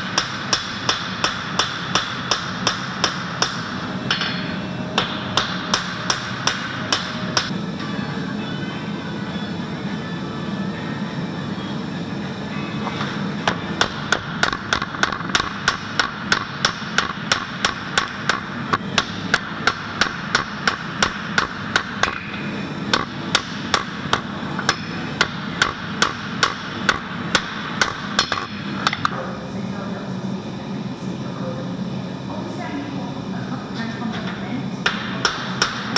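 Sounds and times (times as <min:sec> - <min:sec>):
hammer striking metal on anvil: 0:00.0 - 0:07.5, 0:13.4 - 0:29.1, 0:34.8 - 0:35.9.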